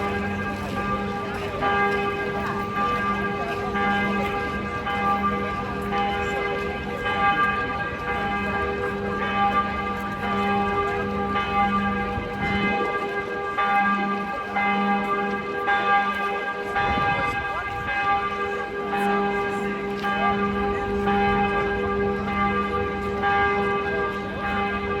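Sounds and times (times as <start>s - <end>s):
church bells ringing in a peal: 0.0s - 25.0s.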